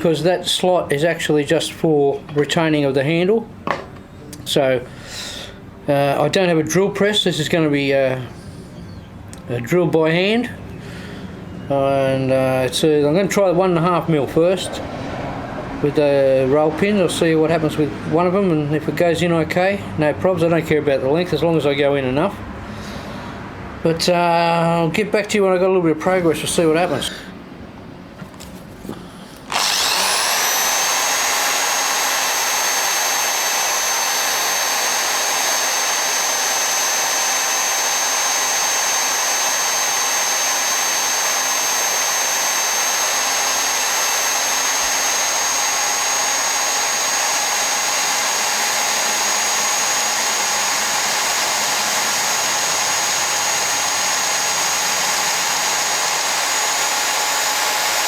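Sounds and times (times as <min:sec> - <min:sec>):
electric drill whining: 0:29.5 - 0:58.0.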